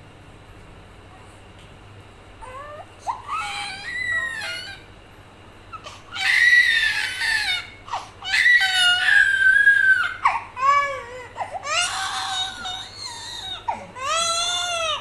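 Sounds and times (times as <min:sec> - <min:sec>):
small child crying: 0:02.4 - 0:04.9, 0:05.8 - 0:15.0.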